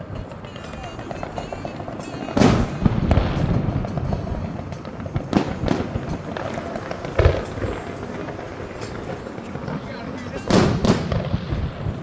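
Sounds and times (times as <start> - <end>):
fireworks bangs: 0.0 - 12.0
fireworks crackling: 0.0 - 12.0.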